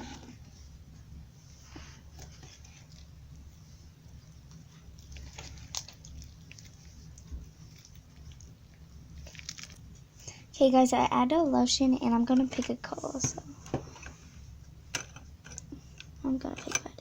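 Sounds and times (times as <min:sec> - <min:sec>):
slime squishing: 0:01.8 - 0:10.2.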